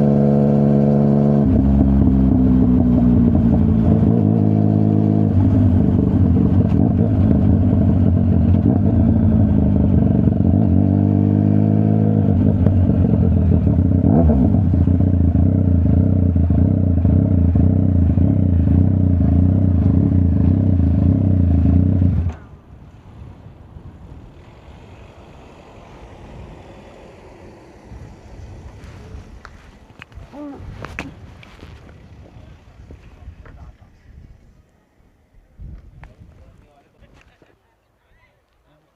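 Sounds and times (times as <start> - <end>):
motorcycle engine revving: 0.0 - 22.6
faint background noise: 2.6 - 38.9.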